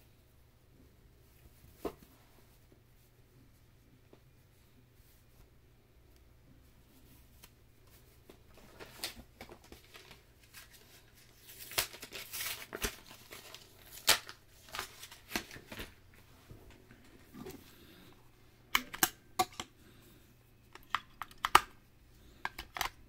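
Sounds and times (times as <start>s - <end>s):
packaging rustling and crinkling: 8.4s - 16.3s.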